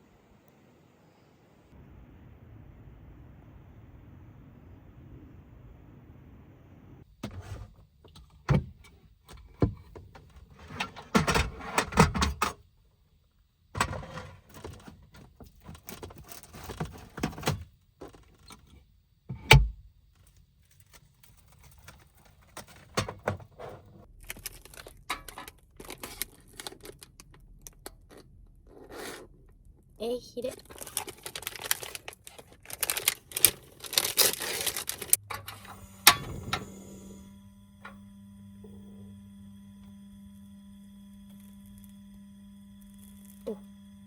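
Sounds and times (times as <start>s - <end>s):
small hard objects clicking: 30.6s - 35.2s.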